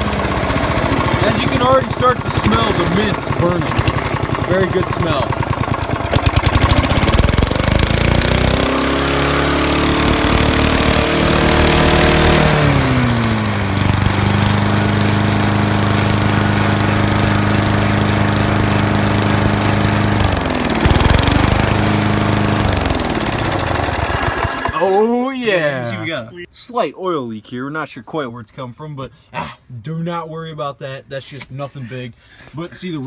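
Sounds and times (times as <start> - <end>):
lawn mower engine running: 0.0 - 25.0.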